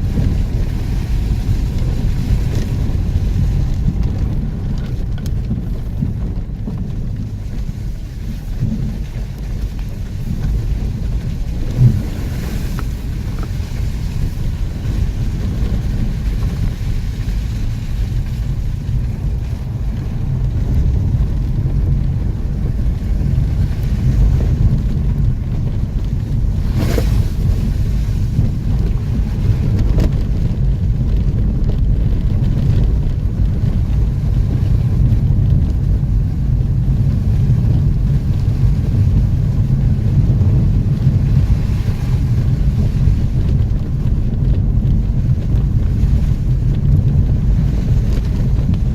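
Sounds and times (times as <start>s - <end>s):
vehicle engine rumble: 0.0s - 48.9s
wind buffeting microphone: 0.0s - 48.9s.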